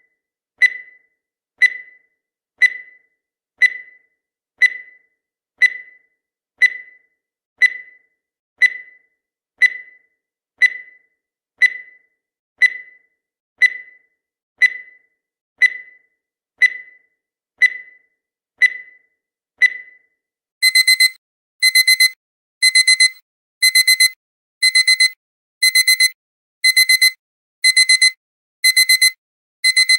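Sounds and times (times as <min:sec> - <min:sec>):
alarm clock beeping: 0:00.6 - 0:20.0, 0:20.6 - 0:29.9
countdown timer beeps: 0:20.6 - 0:29.9.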